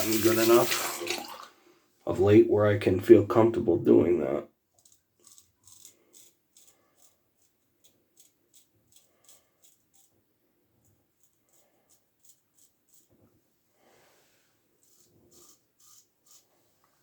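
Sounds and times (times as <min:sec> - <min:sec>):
razor scraping stubble: 0:04.8 - 0:10.1, 0:14.8 - 0:16.5.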